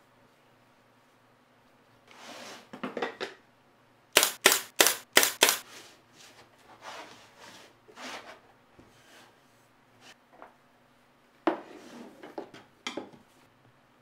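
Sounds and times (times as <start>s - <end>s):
soft scraping or rustling: 0.8s - 2.8s, 5.6s - 10.2s, 11.6s - 12.4s
sharp snaps: 4.2s - 5.6s.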